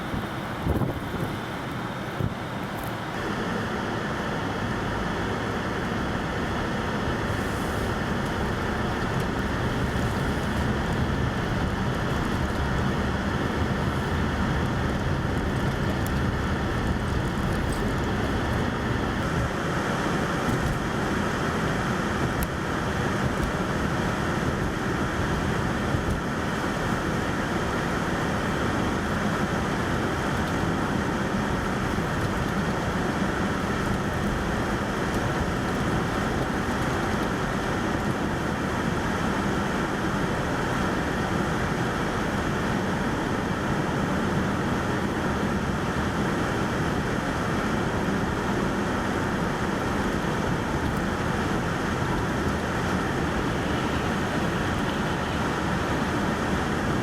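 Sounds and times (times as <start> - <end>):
wind blowing: 0.0 - 3.5, 48.2 - 57.0
road traffic rumble: 0.0 - 57.0.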